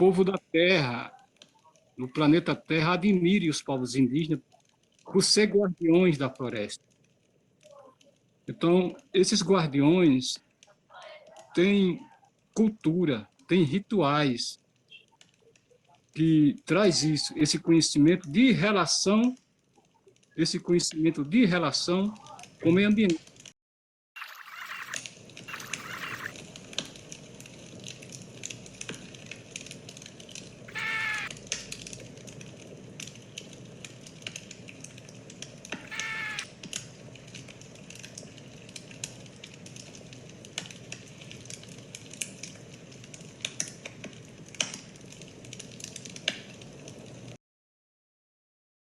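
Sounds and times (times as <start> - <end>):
short animal calls: 24.2 - 26.3, 30.7 - 31.3, 35.8 - 36.5
small clicks: 24.2 - 47.3.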